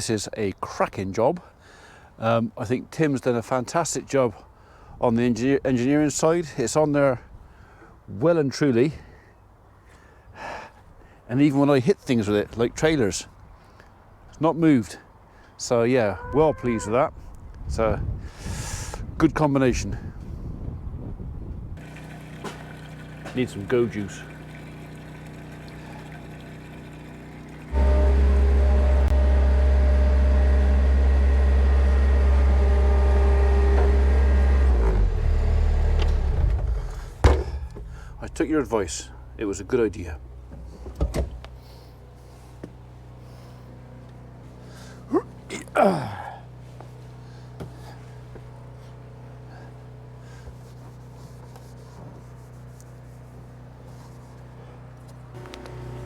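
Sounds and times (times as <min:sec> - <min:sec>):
motor humming: 0:21.8 - 0:39.4, 0:55.4 - 0:56.0
steady low hum: 0:34.7 - 0:56.0.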